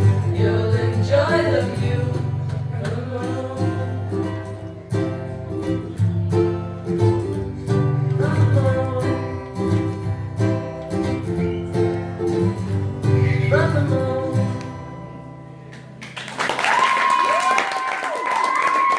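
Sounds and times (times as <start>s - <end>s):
person singing: 0.0s - 4.6s, 7.8s - 10.0s, 13.0s - 14.7s
acoustic guitar strumming: 0.0s - 16.0s.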